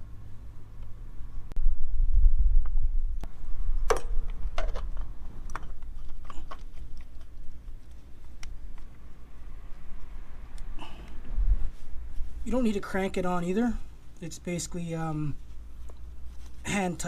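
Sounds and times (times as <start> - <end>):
low rumble: 1.1 - 5.6, 9.0 - 12.5.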